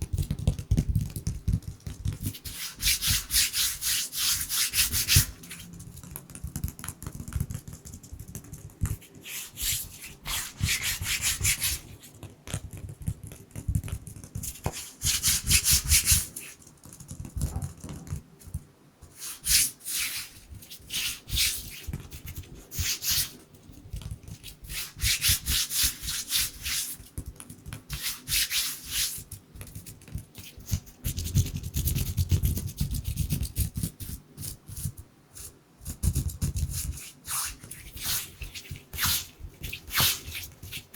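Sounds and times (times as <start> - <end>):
hands rubbing together: 2.3 - 5.9, 8.9 - 12.1, 14.4 - 16.6, 19.1 - 23.4, 24.3 - 27.0, 27.9 - 30.8, 36.2 - 40.9.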